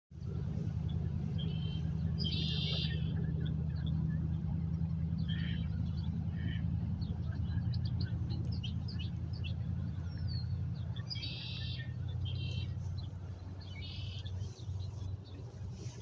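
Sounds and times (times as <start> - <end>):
songbirds calling: 0.2 - 16.0
steady low rumble: 0.2 - 16.0
dense trilled bird song: 0.8 - 16.0.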